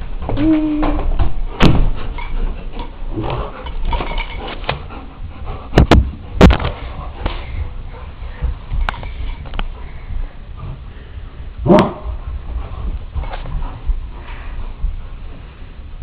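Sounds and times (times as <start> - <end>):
dogs play-fighting: 0.0 - 15.8
low rumbling noise: 5.1 - 16.0.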